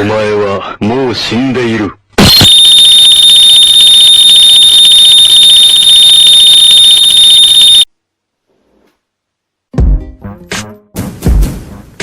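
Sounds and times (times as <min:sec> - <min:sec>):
piercing electronic alarm tone: 0:02.3 - 0:07.9.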